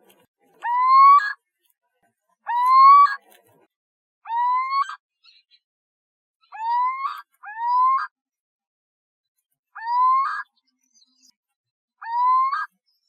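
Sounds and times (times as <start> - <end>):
owl calling: 0.6 - 1.4, 2.4 - 3.2, 4.2 - 5.0, 6.4 - 8.2, 9.8 - 10.5, 12.0 - 12.7.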